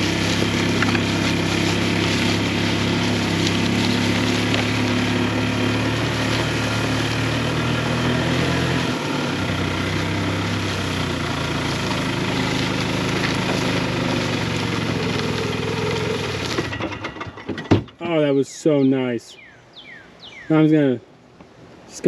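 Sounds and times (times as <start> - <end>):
small engine running under load: 0.0 - 17.5.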